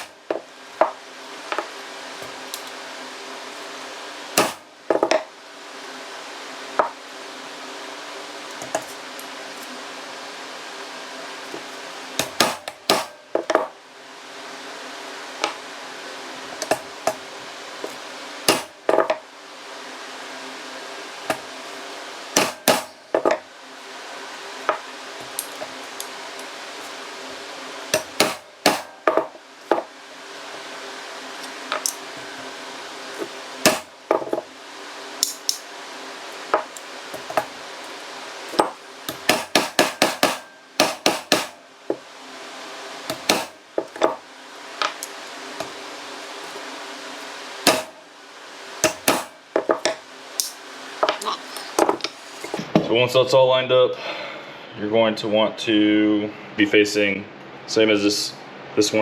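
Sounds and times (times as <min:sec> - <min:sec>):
steady hum: 0:00.0 - 0:59.0
hammer striking metal: 0:04.4 - 0:05.2, 0:12.2 - 0:13.2, 0:18.5 - 0:18.7, 0:22.4 - 0:23.0, 0:28.0 - 0:29.2, 0:38.6 - 0:41.6, 0:47.6 - 0:47.9.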